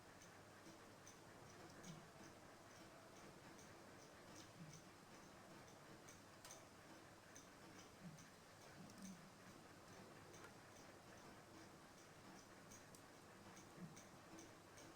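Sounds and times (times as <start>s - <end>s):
faint regular ticking: 0.2s - 14.9s.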